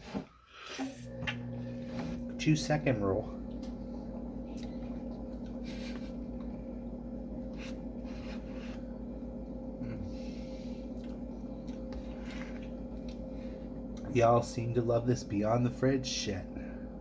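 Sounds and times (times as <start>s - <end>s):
steady low hum: 0.9s - 17.0s
spoon scraping ice cream tub: 7.4s - 8.9s.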